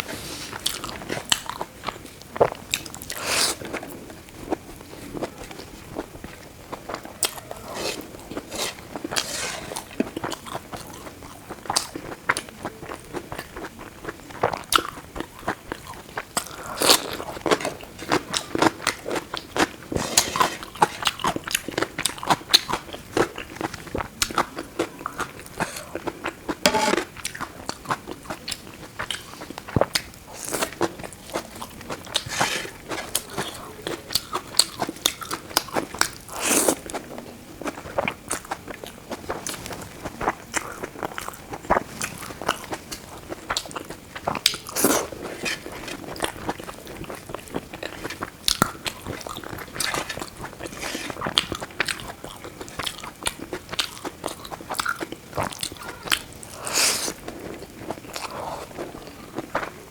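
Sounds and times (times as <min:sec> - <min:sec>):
person chewing crunchy food: 0:00.1 - 0:59.8.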